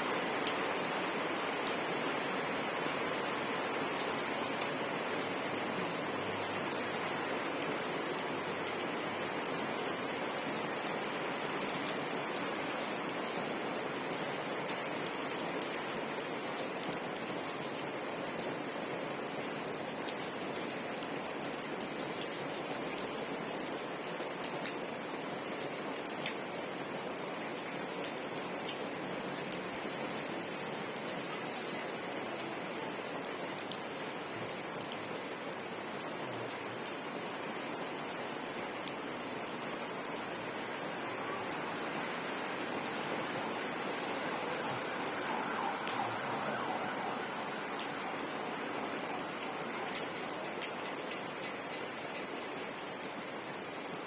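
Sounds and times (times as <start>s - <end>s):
steady rainfall: 0.0s - 54.0s
raindrop ticks: 44.0s - 52.3s.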